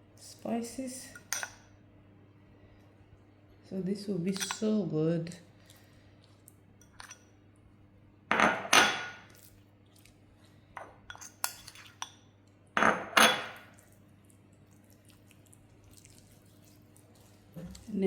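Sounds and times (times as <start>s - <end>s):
dishes and utensils clattering: 12.8s - 13.7s.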